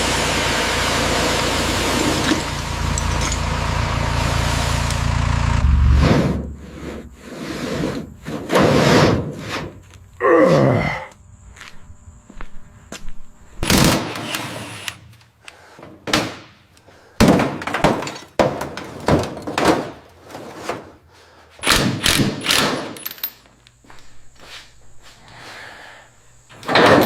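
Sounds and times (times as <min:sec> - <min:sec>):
heavy knocks and crunching: 0:17.2 - 0:21.0.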